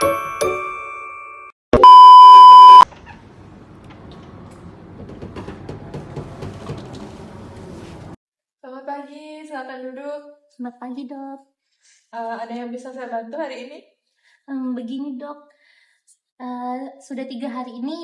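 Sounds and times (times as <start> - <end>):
loud electronic beep: 1.8 - 2.8.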